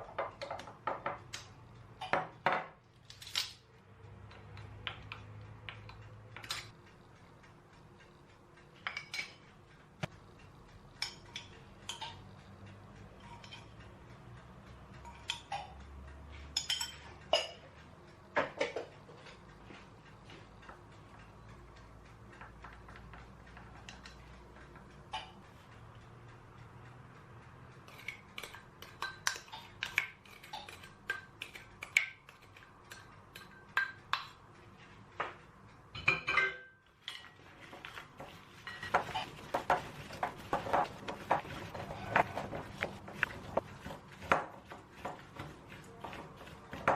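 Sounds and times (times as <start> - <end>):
dishes and cutlery clinking: 0.0 - 3.6, 8.8 - 9.5, 10.9 - 12.4, 13.2 - 13.8, 15.0 - 15.8, 16.4 - 19.9, 22.4 - 25.6, 27.8 - 34.4, 36.0 - 46.9.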